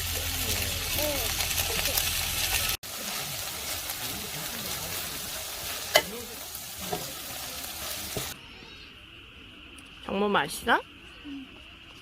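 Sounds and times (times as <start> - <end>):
food sizzling in a pan: 0.0 - 8.4.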